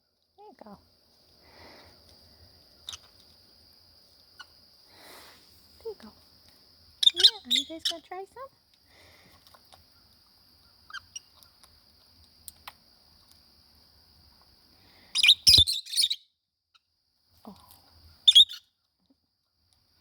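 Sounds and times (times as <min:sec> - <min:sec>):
lovebirds chirping: 0:02.6 - 0:03.2, 0:07.0 - 0:08.4, 0:09.8 - 0:11.7, 0:15.2 - 0:16.3, 0:18.0 - 0:18.8.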